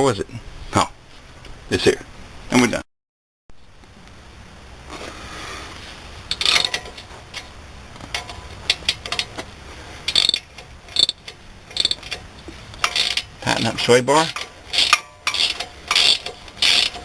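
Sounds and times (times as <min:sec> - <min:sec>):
ratchet wrench clicking: 0:10.1 - 0:12.2, 0:12.8 - 0:13.2, 0:14.4 - 0:17.0.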